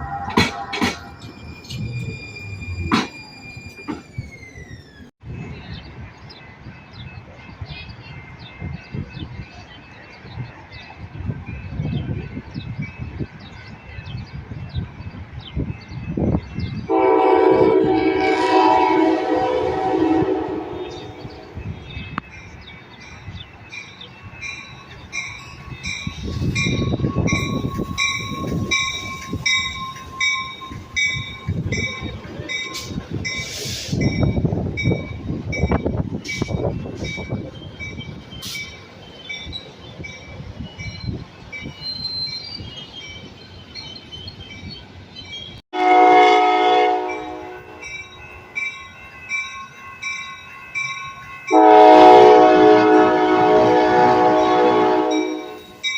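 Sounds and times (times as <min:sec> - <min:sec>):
train rumble: 0:00.0 - 0:55.9
train horn: 0:16.9 - 0:21.4, 0:45.7 - 0:47.9, 0:51.5 - 0:55.7
bell ringing: 0:21.6 - 0:38.0, 0:47.0 - 0:51.8.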